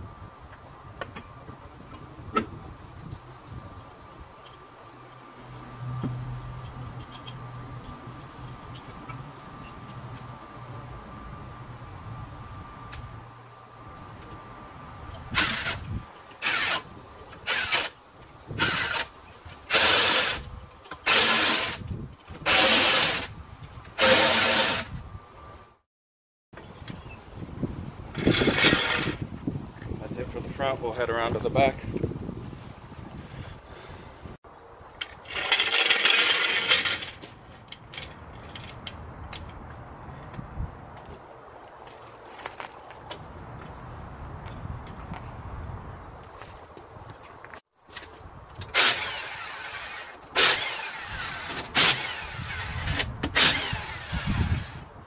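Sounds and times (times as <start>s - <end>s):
impact wrench bursts: 24.0s - 24.9s, 48.6s - 54.8s
metal tools clattering: 35.0s - 39.0s.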